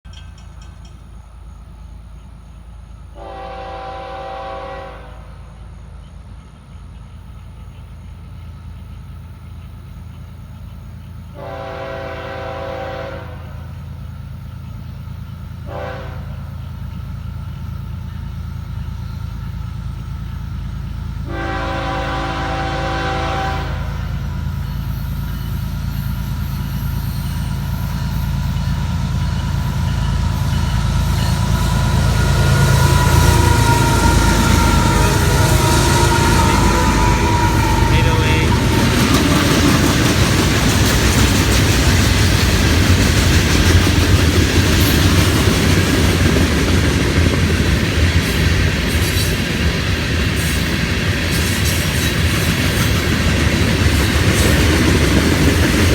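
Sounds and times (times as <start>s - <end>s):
train engines rumbling: 0.0s - 55.9s
locomotive air horn: 3.2s - 5.5s, 11.4s - 13.6s, 15.6s - 16.6s, 21.2s - 24.3s, 31.6s - 39.9s.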